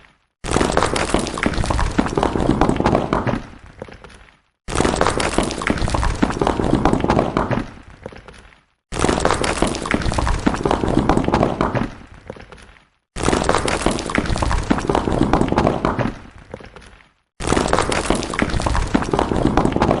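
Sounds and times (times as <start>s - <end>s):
stones falling and clattering: 0.0s - 20.0s.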